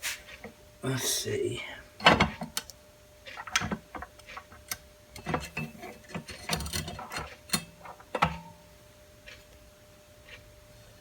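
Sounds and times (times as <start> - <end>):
metal parts clicking and knocking: 3.3 - 8.4.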